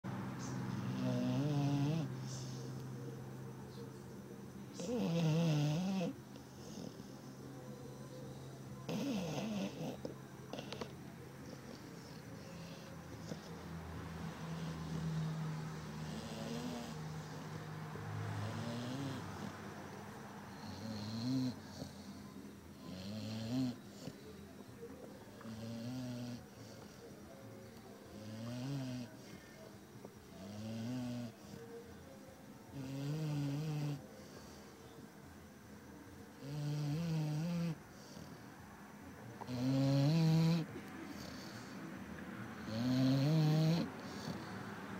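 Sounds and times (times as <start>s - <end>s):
dog snoring: 0.4s - 2.8s, 4.7s - 7.2s, 8.3s - 19.8s, 20.5s - 27.2s, 28.1s - 31.9s, 32.7s - 34.8s, 36.3s - 38.5s, 39.4s - 41.8s, 42.5s - 44.7s.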